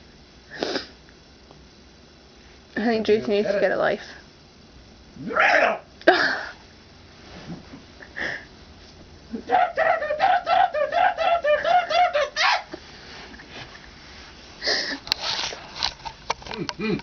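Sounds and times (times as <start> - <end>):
person making breathy sounds: 16.6 - 17.0.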